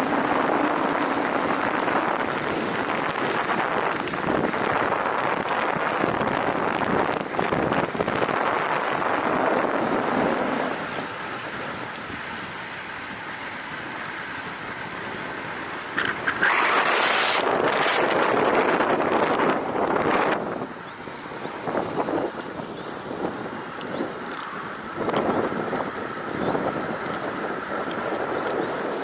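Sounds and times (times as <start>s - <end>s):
wind buffeting microphone: 0.0s - 29.0s.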